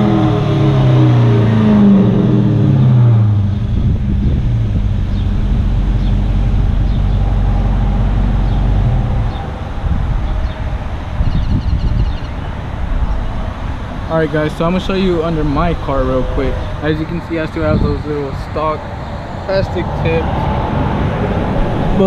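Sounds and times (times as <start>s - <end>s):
car engine idling: 0.0s - 11.2s.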